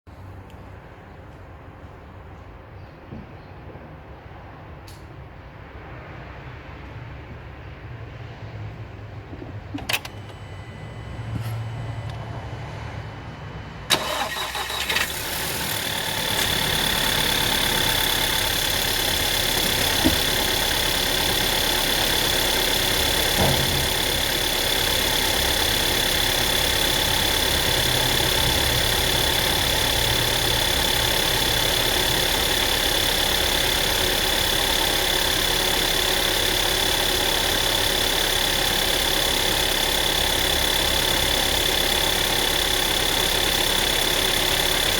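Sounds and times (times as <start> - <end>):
car engine starting and idling: 9.3 - 44.9
engine rattling: 13.8 - 44.9.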